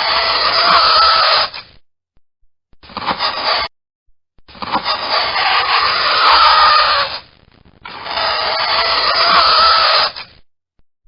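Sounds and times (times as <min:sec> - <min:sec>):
fingernails scratching a chalkboard: 0:02.9 - 0:03.7, 0:04.5 - 0:07.2, 0:07.9 - 0:10.3.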